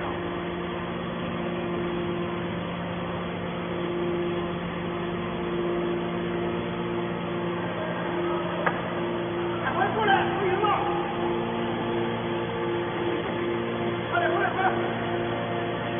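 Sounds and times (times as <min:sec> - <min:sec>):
power unit humming: 0:00.0 - 0:15.9
higher tone: 0:03.6 - 0:15.9.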